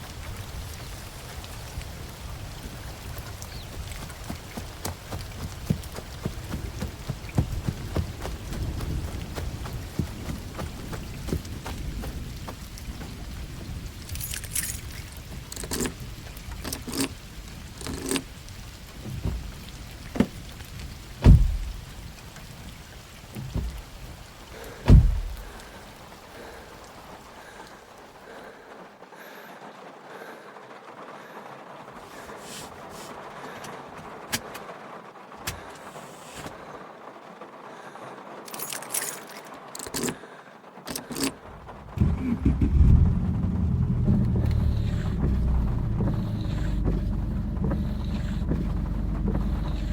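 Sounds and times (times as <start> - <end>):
steady rain: 0.0 - 49.9
keys jangling: 14.0 - 17.2, 17.8 - 18.2, 38.5 - 40.2, 40.9 - 41.4
car engine starting: 21.2 - 21.9, 24.8 - 25.6, 41.1 - 49.9
heavy low thumps: 21.2 - 21.9, 24.8 - 25.7, 41.9 - 49.9.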